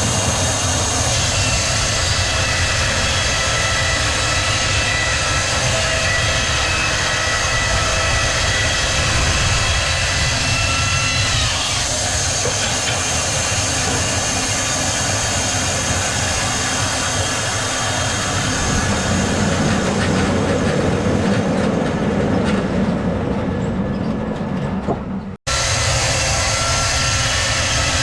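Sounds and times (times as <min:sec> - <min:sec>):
sawmill machinery rumbling: 0:00.0 - 0:28.0.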